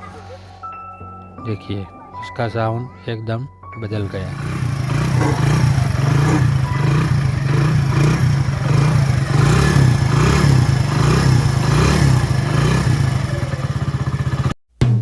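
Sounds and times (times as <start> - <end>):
motorcycle engine running: 4.1 - 14.6.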